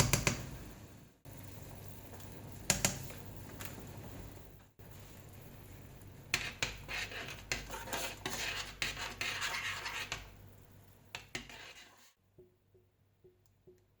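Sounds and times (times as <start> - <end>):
metal spoon scraping a bowl: 6.4 - 10.3, 11.2 - 12.2.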